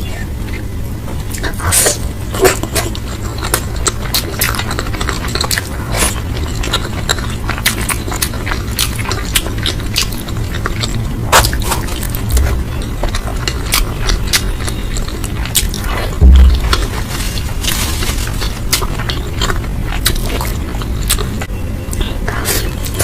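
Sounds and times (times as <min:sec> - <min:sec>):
chewing and crunching food: 0:00.0 - 0:23.0
steady low hum: 0:00.0 - 0:23.0
low thump: 0:16.2 - 0:17.0.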